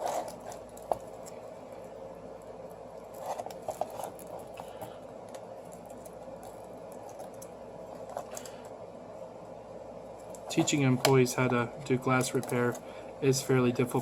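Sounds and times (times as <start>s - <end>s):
small tools clicking and scratching: 0.0s - 1.4s, 3.1s - 8.7s, 10.2s - 12.8s
steady background hum: 0.0s - 14.0s.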